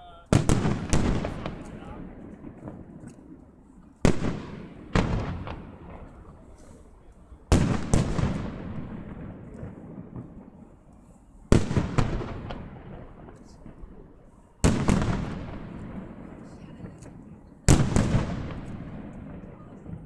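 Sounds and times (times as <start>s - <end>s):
fireworks booming: 0.0s - 20.0s
rolling echo: 0.0s - 20.0s.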